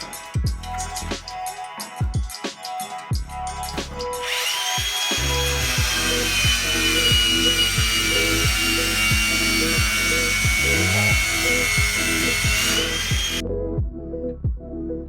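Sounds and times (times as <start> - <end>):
music with kick-drum beat: 0.0 - 14.7
power tool high whine: 4.2 - 13.4.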